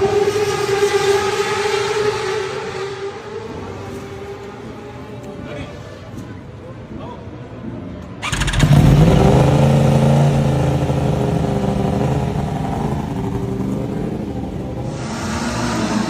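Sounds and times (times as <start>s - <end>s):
other engine noise: 8.2s - 16.0s
motorcycle engine idling: 9.7s - 16.0s.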